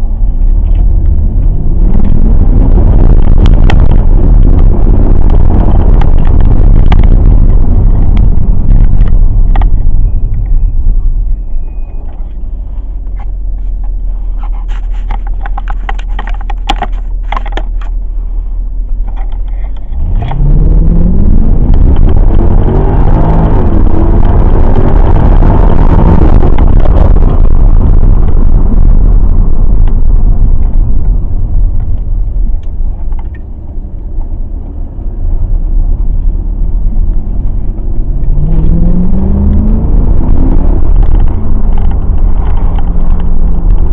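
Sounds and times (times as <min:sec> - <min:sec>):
car engine accelerating hard: 0:00.0 - 0:18.0, 0:18.9 - 0:43.9.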